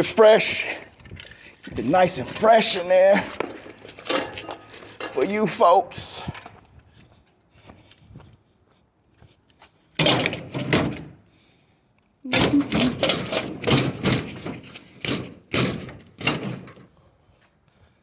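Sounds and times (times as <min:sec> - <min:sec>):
scrap clattering and thudding: 0:01.0 - 0:06.6, 0:10.0 - 0:11.2, 0:12.4 - 0:16.9.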